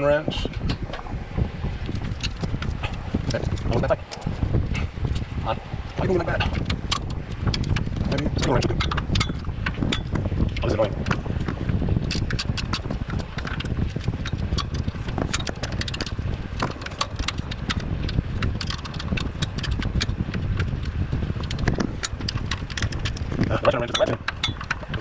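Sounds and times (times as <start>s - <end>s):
handling and rubbing noise: 0.5s - 25.0s
ratcheting wrench clicking: 12.0s - 25.0s.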